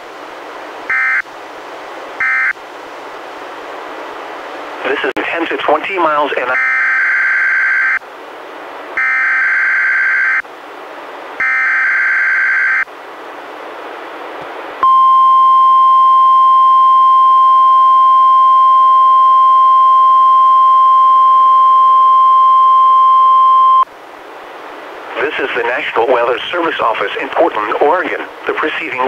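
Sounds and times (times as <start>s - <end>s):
receiver hiss: 0.0s - 29.0s
steady alarm tone: 0.9s - 1.2s, 2.2s - 2.6s, 6.6s - 8.0s, 9.0s - 10.4s, 11.4s - 12.9s.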